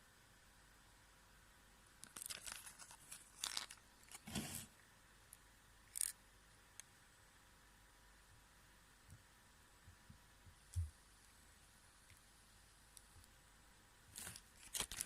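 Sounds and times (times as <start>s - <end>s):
packaging tearing and crinkling: 2.0s - 4.6s, 14.2s - 15.0s.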